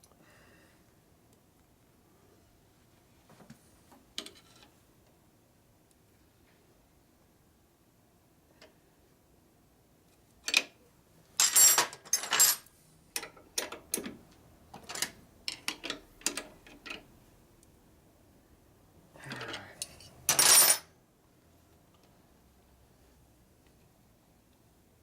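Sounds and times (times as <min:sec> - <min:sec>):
metal tools clinking and rattling: 0:11.4 - 0:12.6, 0:19.4 - 0:20.9.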